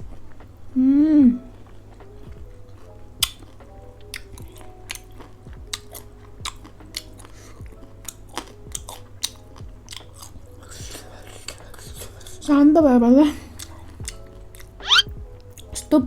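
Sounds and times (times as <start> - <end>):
quiet background music: 0.0 - 16.0
person chewing food: 1.5 - 12.5, 13.4 - 15.9
mouth clicks: 14.0 - 15.9.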